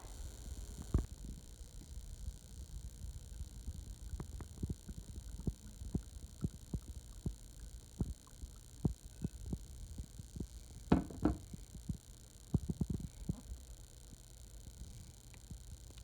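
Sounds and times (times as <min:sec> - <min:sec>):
soft knocks and taps: 0:10.9 - 0:11.5.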